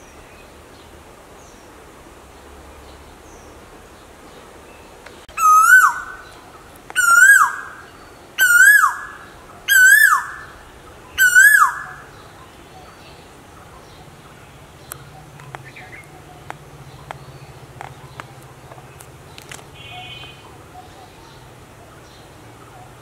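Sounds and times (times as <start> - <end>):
koel calling: 5.3 - 6.3, 6.9 - 12.1.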